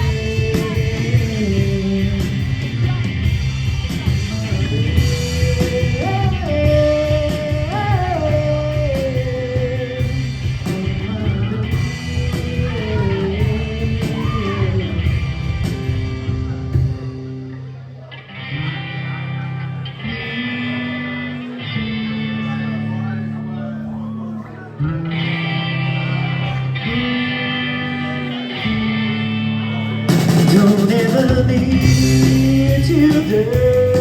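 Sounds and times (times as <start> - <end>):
drums: 0.0 - 17.8, 24.8 - 34.0
bass guitar: 0.0 - 34.0
electric guitar: 0.0 - 34.0.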